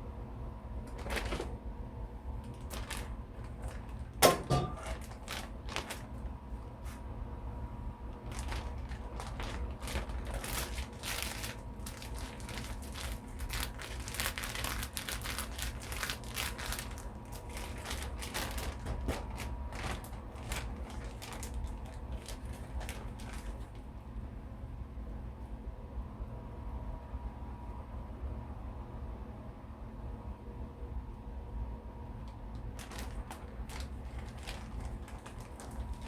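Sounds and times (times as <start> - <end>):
steady low hum: 0.0 - 36.0
crinkling and rustling: 0.8 - 1.6, 2.3 - 7.1, 8.1 - 24.0, 32.5 - 36.0.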